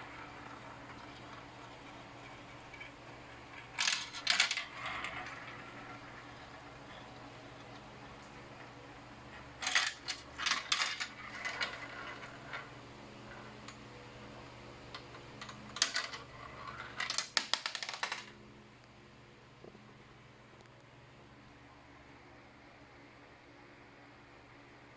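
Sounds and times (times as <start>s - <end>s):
marbles clattering down plastic track: 0.0s - 13.9s, 14.9s - 18.4s.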